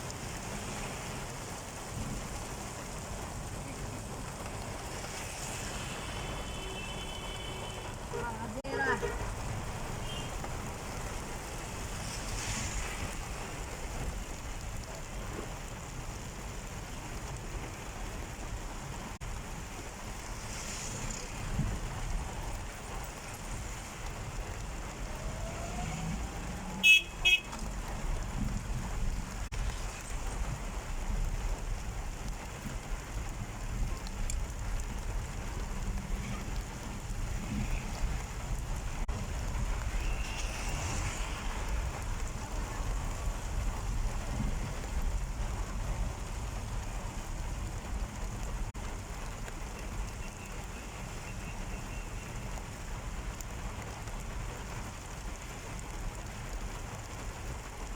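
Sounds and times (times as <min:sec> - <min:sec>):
steady rain: 0:00.0 - 0:57.9
car horn toots: 0:06.5 - 0:09.3, 0:26.8 - 0:27.6.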